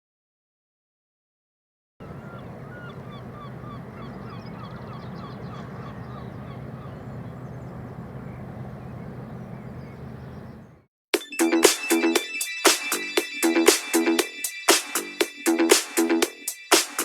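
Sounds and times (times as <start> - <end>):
bird calling short repeated notes: 2.0 - 10.8
steady low hum: 2.0 - 10.8.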